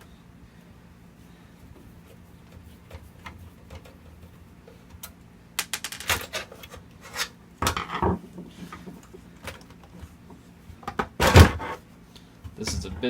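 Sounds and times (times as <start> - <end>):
computer case clicks and knocks: 10.8 - 11.7.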